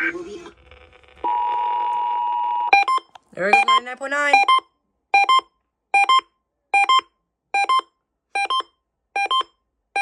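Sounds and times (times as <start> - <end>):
electronic alert beeps: 2.7 - 10.0.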